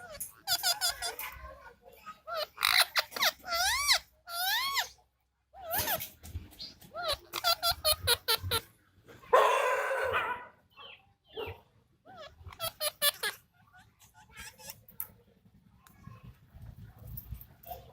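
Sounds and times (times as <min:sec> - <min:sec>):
parakeets squawking: 0:00.0 - 0:01.4, 0:02.0 - 0:08.7, 0:10.8 - 0:14.8.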